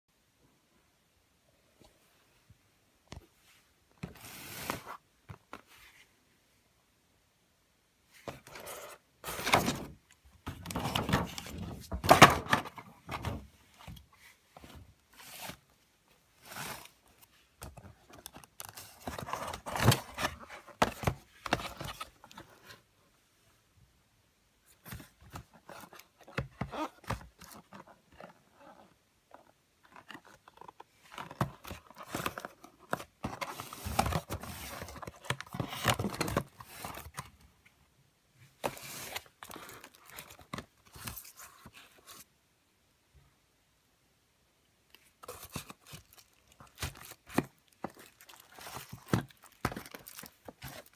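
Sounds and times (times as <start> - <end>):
plastic wrapping crinkling: 45.2 - 50.9.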